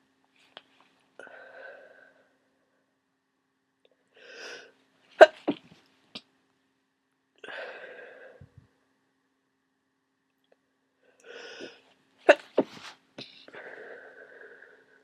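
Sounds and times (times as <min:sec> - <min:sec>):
person breathing in: 0:01.2 - 0:02.4, 0:07.4 - 0:08.6, 0:11.2 - 0:11.8, 0:13.2 - 0:15.0
person sneezing: 0:05.2 - 0:05.8, 0:11.5 - 0:13.5.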